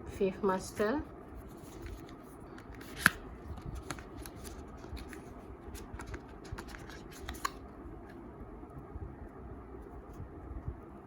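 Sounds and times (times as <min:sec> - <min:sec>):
packaging clicks and rustles: 0:01.6 - 0:07.7.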